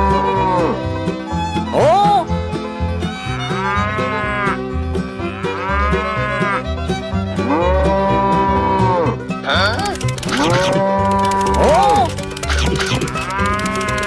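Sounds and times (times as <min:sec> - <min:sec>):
cow mooing: 0:03.6 - 0:04.6, 0:05.2 - 0:06.6, 0:07.4 - 0:09.7.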